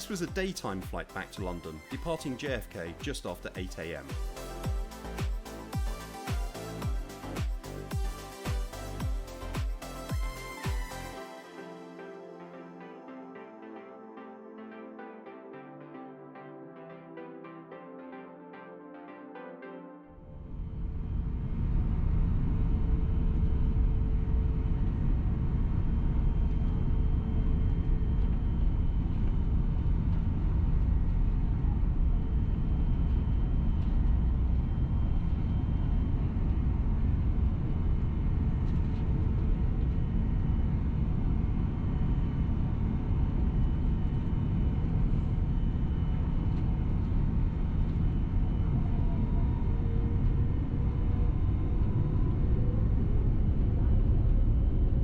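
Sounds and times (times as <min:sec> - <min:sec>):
faint steady whine: 0:20.2 - 0:55.0
aircraft cabin engine rumble: 0:20.8 - 0:55.0.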